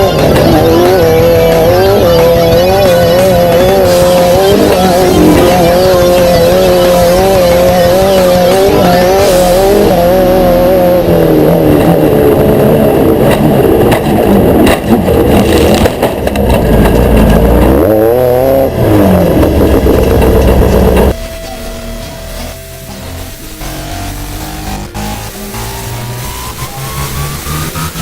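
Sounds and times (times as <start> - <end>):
loud rushing noise: 0.0 - 28.0
race engine revving: 0.0 - 28.0.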